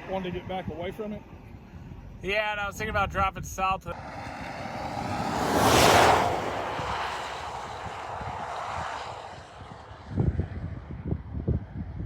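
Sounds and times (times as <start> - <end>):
vehicle passing with a whoosh: 3.9 - 12.0.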